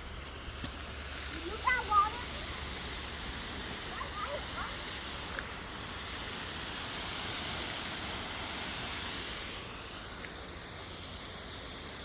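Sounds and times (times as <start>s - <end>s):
water spraying: 0.0s - 12.0s.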